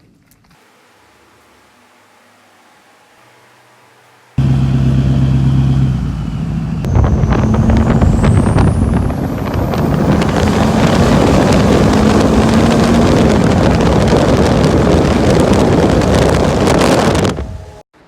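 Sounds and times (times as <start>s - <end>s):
diesel pickup engine revving: 4.2s - 17.8s
turbo whistle: 5.0s - 14.0s.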